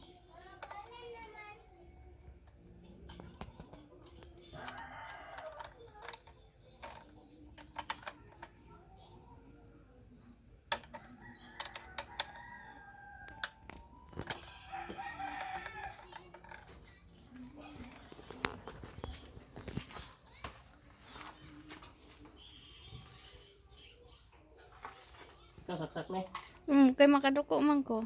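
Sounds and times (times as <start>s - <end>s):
rooster crowing: 4.5s - 5.9s, 11.0s - 13.6s, 14.4s - 16.3s.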